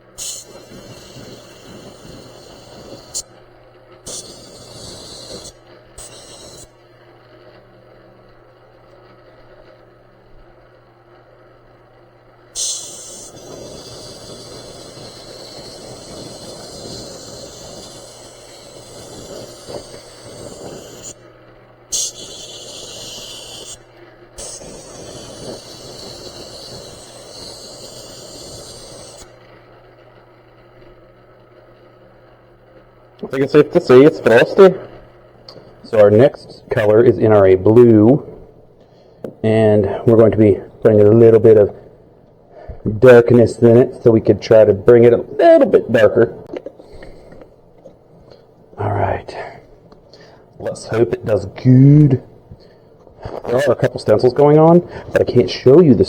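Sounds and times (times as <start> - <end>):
spray gun hissing: 0.0 - 3.4, 4.0 - 6.8, 12.5 - 21.3, 21.9 - 29.4, 50.6 - 56.0
steady low hum: 0.0 - 56.0.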